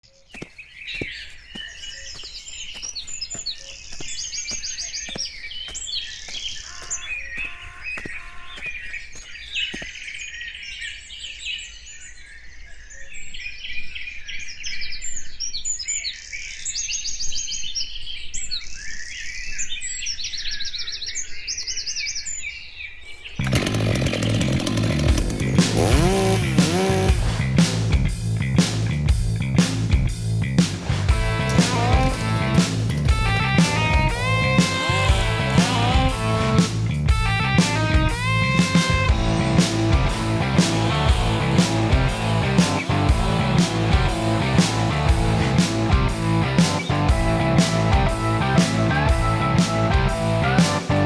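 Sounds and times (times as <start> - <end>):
songbirds chirping and trilling: 0.0 - 23.6
loud rock music with guitar: 25.1 - 51.0.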